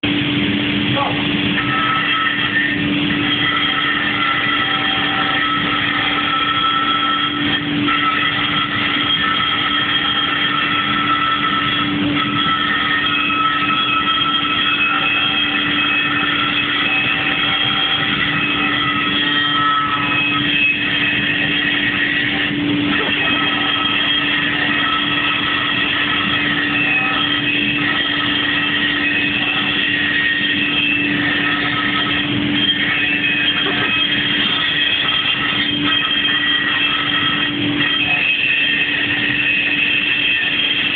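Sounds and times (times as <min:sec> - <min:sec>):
grinder grinding metal: 0:00.0 - 0:40.9
high-pitched squeal: 0:00.0 - 0:40.9.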